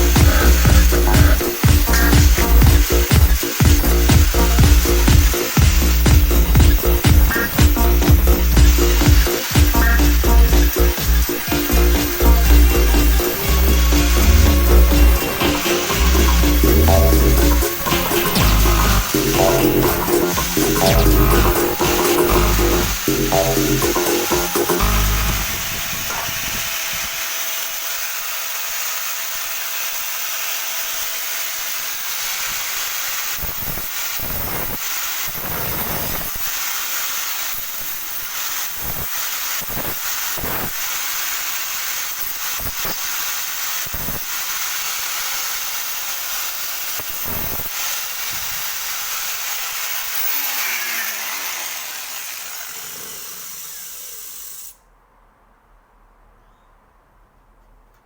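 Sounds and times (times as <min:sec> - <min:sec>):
power tool whining: 0:00.0 - 0:54.8.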